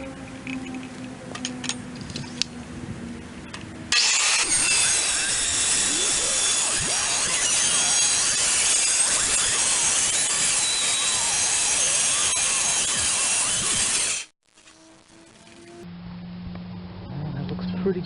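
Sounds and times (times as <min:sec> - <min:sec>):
power saw cutting wood: 0:03.9 - 0:15.8.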